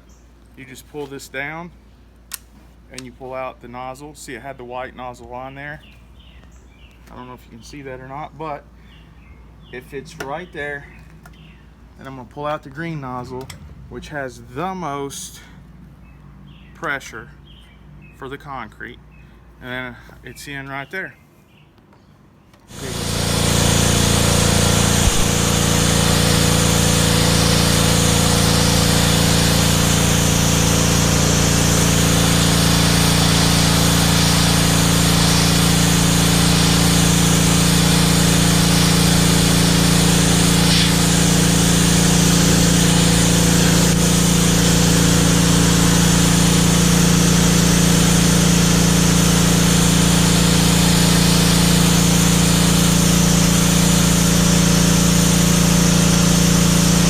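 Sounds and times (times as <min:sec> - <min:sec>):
high-pressure water jet hissing: 0:22.7 - 0:57.0
small engine humming: 0:22.7 - 0:57.0.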